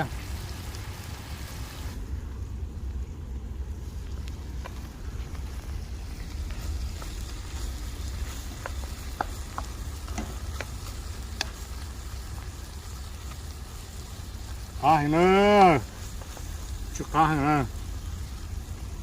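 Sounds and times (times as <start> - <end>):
food sizzling in a pan: 0.0 - 2.0, 3.7 - 19.0
low rumble: 0.2 - 19.0
utensil clicking against pan: 8.6 - 11.6.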